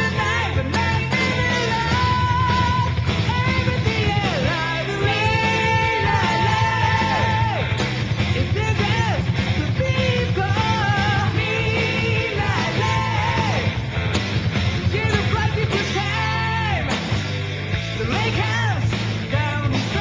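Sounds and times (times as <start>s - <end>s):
person singing: 0.0s - 7.6s, 8.4s - 13.7s, 14.9s - 16.9s
heavy metal song: 0.0s - 20.0s.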